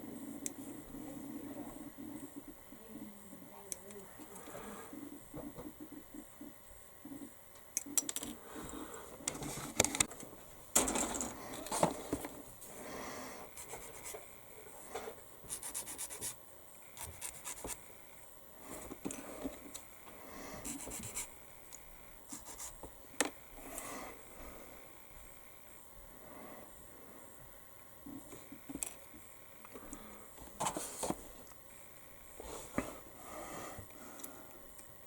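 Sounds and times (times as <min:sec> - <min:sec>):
plastic parts rubbing and scraping: 0:09.2 - 0:10.2.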